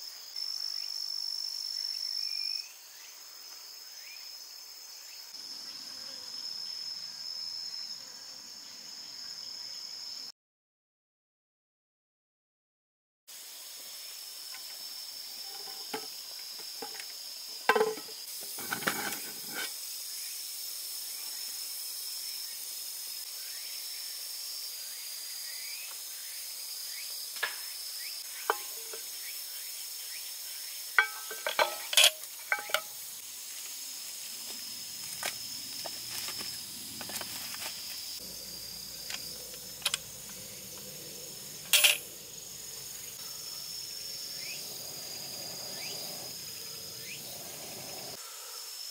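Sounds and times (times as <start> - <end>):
high insect trill: 13.3 - 48.9
metal mess tin clinking: 17.7 - 19.7, 28.5 - 29.1, 31.0 - 33.0, 41.7 - 42.0.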